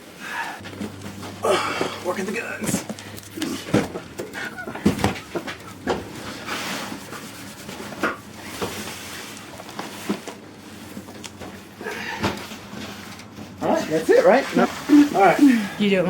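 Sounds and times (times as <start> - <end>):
rustling scrape: 5.2 - 11.6, 12.5 - 15.4.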